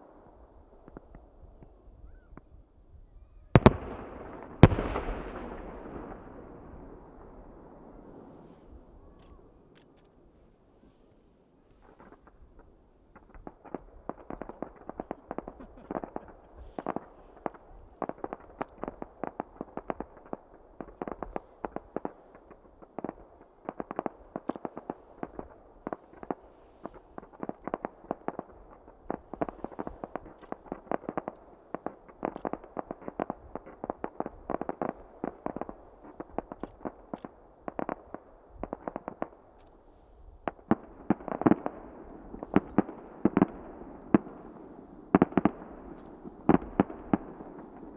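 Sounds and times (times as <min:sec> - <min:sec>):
deep firework booms: 0:03.5 - 0:09.0
fireworks bangs: 0:03.5 - 0:09.4, 0:11.8 - 0:47.9.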